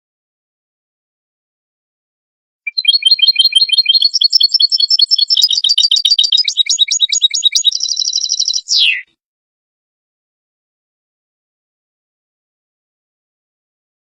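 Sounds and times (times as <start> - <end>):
bird twittering: 2.7 - 9.1.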